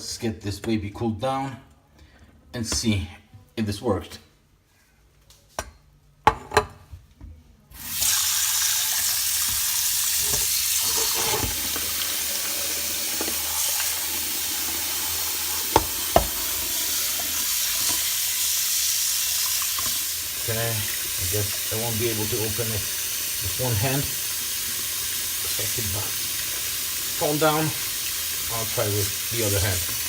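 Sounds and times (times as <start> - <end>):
water running into a sink: 7.8 - 30.0.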